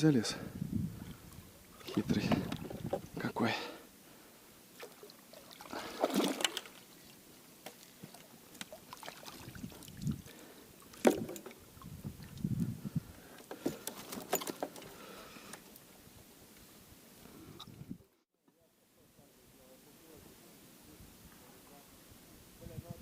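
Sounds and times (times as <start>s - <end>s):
water splashing: 1.6s - 3.2s, 4.7s - 12.5s
knocks in a boat: 11.0s - 11.5s.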